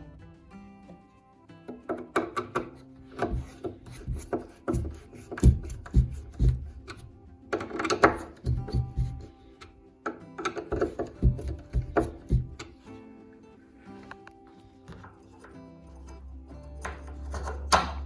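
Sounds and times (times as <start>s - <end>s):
background music: 0.0s - 18.0s
wooden panels knocking: 1.7s - 9.4s, 10.4s - 12.8s.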